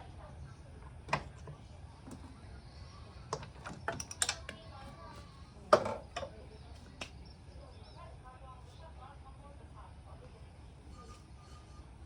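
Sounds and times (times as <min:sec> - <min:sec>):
low steady hum: 0:00.0 - 0:12.0
tools clicking and knocking: 0:03.4 - 0:04.6.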